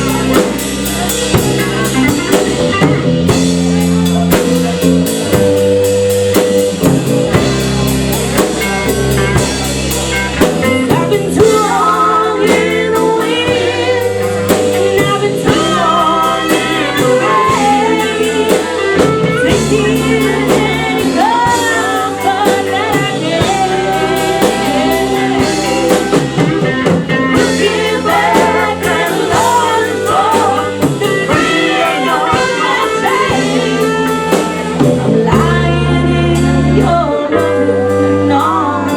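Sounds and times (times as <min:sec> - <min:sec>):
drum kit steady beat: 0:00.0 - 0:38.9
guitar: 0:00.0 - 0:38.9
live band playing blues-rock: 0:00.0 - 0:38.9
person singing: 0:10.6 - 0:38.9.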